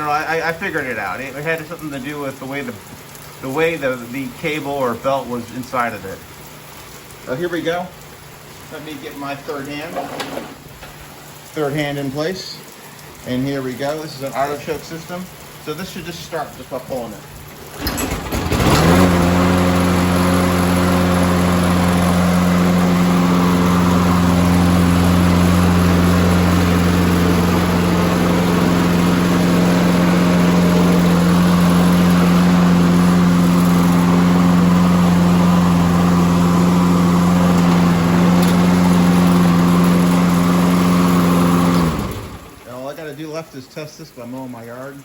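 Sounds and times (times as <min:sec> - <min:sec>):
lawn mower engine running: 0:09.8 - 0:11.2, 0:17.6 - 0:42.7.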